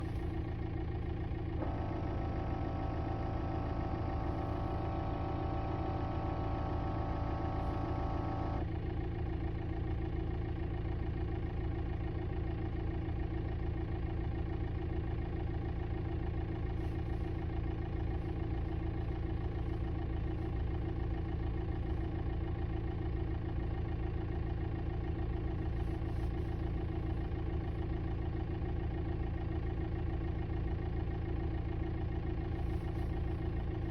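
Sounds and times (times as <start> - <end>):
diesel engine idling: 0.0 - 33.9.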